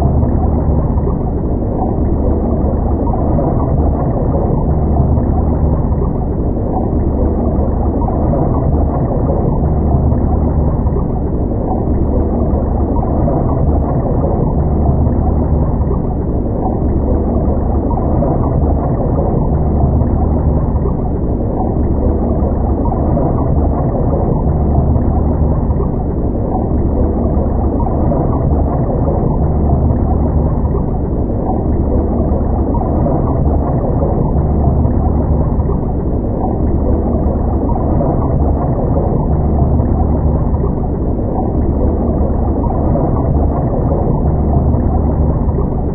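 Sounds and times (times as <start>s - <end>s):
underwater low rumble: 0.0s - 45.9s
water gurgling: 0.0s - 45.9s.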